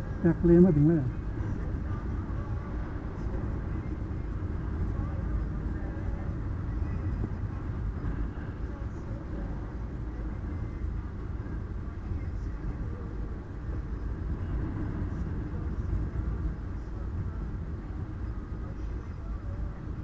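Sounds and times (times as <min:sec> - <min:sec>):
car road and engine rumble: 0:00.0 - 0:20.0.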